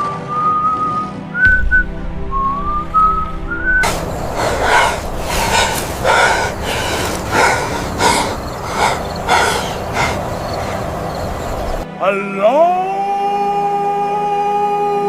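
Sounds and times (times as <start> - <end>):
steady rushing background: 1.5 - 11.8
person breathing hard: 3.8 - 11.8.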